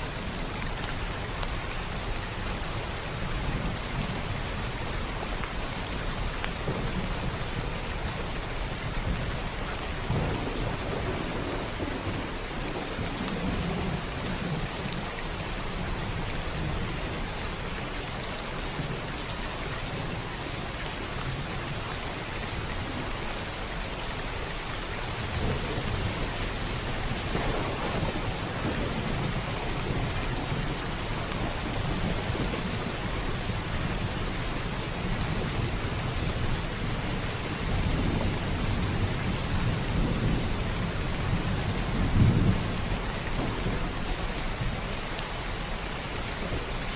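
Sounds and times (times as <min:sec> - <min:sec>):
heavy rain drumming on a roof: 0:00.0 - 0:46.9
low rolling thunder: 0:06.6 - 0:15.0, 0:25.2 - 0:45.0.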